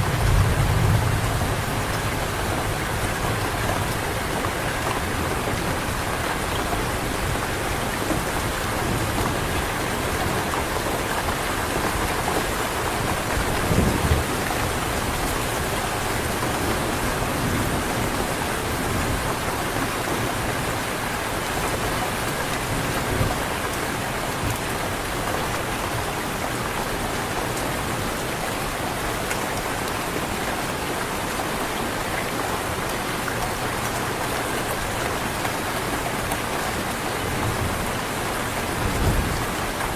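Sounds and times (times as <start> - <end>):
rumble of thunder: 0.0 - 4.0, 13.4 - 15.1, 38.7 - 39.6
heavy rain falling: 0.0 - 39.9.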